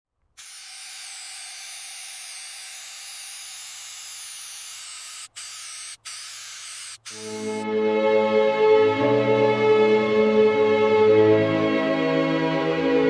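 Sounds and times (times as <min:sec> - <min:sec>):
high-pitched spray hiss: 0:00.3 - 0:07.6.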